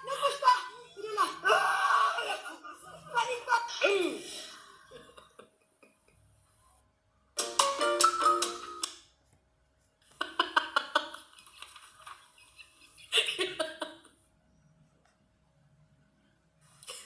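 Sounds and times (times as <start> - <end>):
woman laughing: 0.0 - 3.7.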